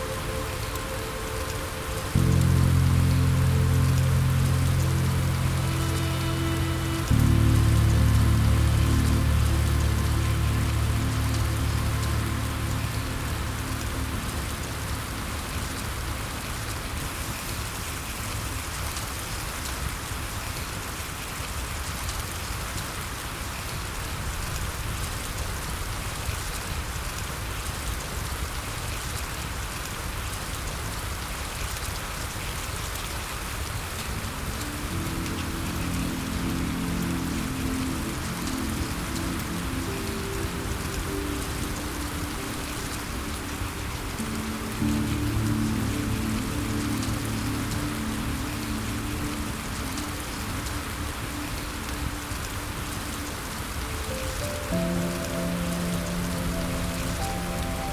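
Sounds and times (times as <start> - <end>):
soft low music pad: 0.0 - 21.4, 33.7 - 57.9
steady rain: 0.0 - 57.9.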